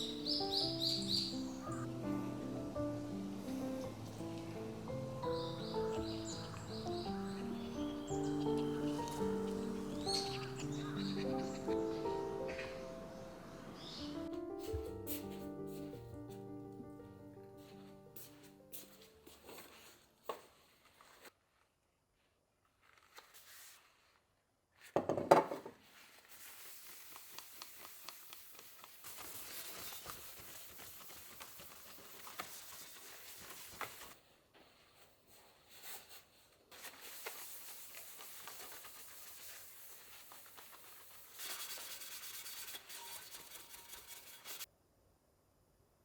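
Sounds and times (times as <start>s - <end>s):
rubbing and scraping: 25.8s - 34.2s, 35.8s - 44.7s
cooking hiss: 26.3s - 34.2s, 36.7s - 43.5s.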